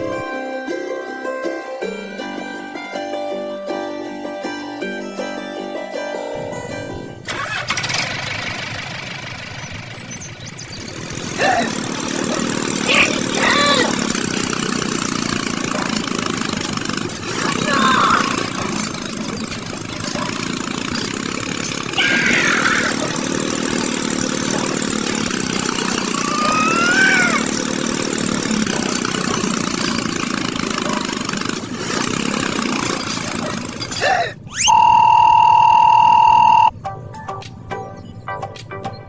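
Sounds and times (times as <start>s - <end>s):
background music: 0.0s - 7.6s, 36.7s - 39.0s
loud steady beep: 34.6s - 36.7s.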